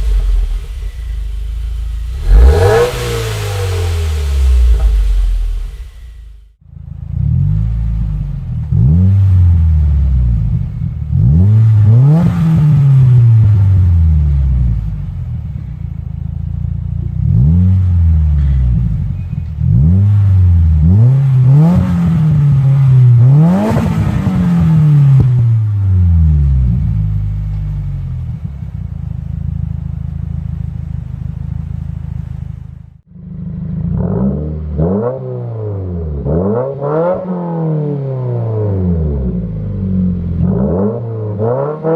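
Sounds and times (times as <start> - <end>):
car engine idling: 0.0 - 8.7, 24.2 - 34.0
car engine revving: 0.0 - 15.6, 17.1 - 28.6, 33.0 - 41.9.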